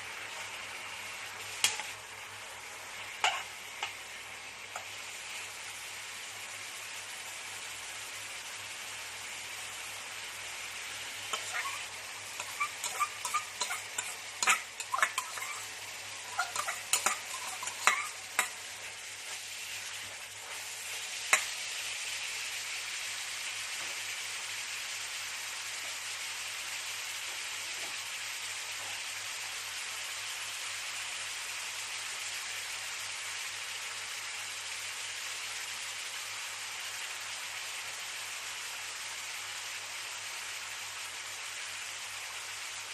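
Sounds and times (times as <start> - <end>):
food sizzling in a pan: 0.0 - 42.9
utensil scraping a pan: 3.2 - 4.0, 11.3 - 18.6.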